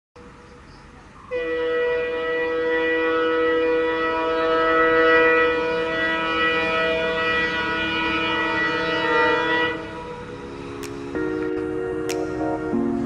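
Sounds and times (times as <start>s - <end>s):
locomotive air horn blast: 1.3s - 10.8s.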